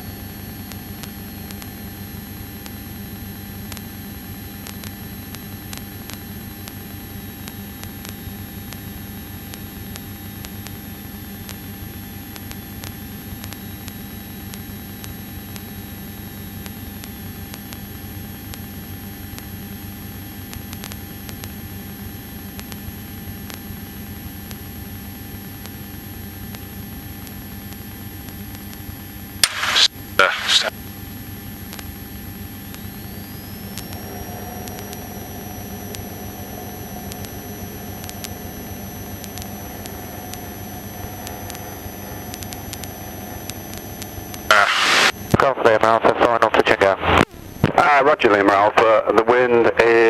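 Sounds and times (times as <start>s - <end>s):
steady hiss: 29.4s - 30.7s, 34.0s - 45.1s
aircraft engine and propeller droning: 32.0s - 44.5s.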